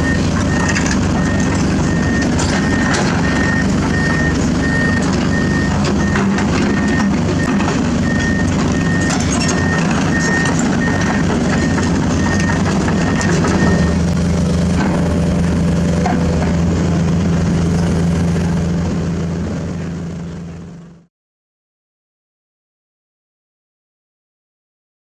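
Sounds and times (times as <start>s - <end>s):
back-up alarm beeping: 0.0s - 14.2s
diesel construction machine running: 0.0s - 21.1s.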